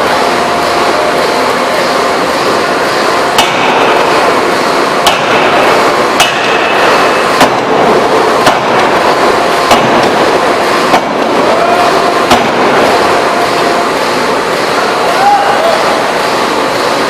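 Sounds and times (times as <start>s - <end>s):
loud machine noise: 0.0s - 17.0s
forging hammer metallic clanks: 5.0s - 11.4s.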